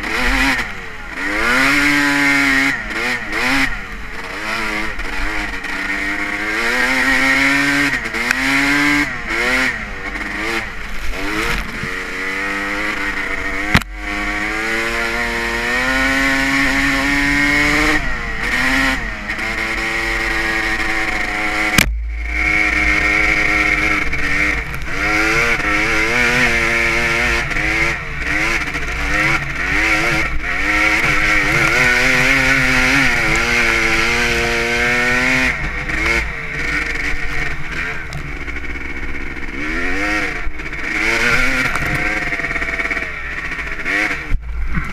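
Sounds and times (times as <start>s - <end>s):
motocross engine revving: 0.0s - 44.9s.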